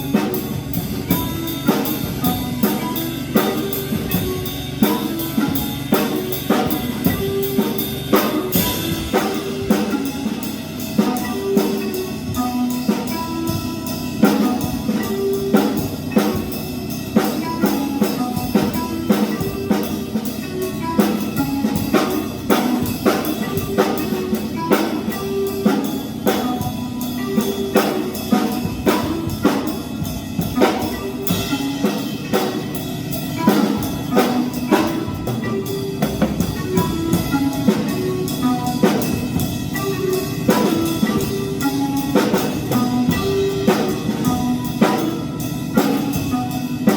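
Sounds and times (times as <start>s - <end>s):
electronic backing track: 0.0s - 46.9s
jazz drum kit playing: 0.0s - 46.9s.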